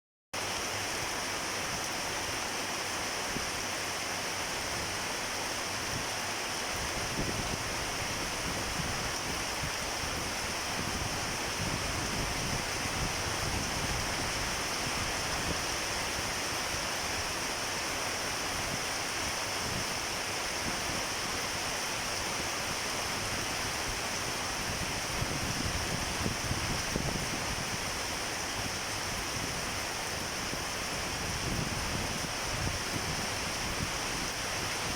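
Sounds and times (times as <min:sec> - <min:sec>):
wind buffeting microphone: 0:06.9 - 0:16.4, 0:24.6 - 0:34.9.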